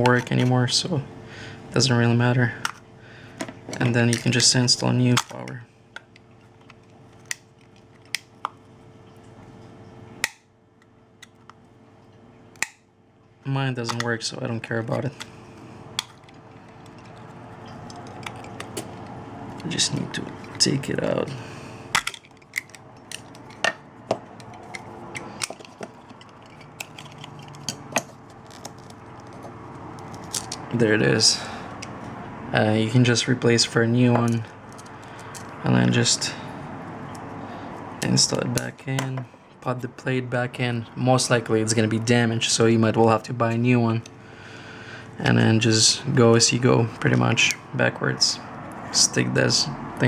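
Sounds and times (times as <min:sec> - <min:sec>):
faint steady hum: 0:00.0 - 0:50.0
plastic parts clicking and snapping: 0:21.9 - 0:30.7.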